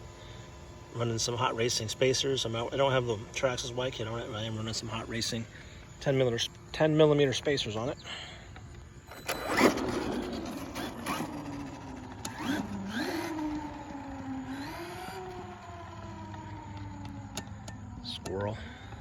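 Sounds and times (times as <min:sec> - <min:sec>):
electric motor whining: 0:09.0 - 0:19.0.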